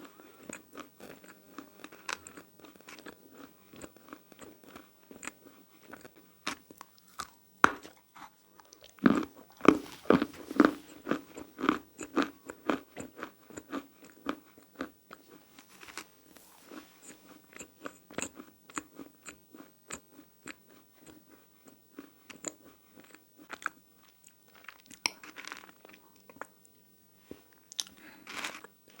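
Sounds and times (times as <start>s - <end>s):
crunching and chewing: 0.0s - 26.8s, 27.5s - 29.0s.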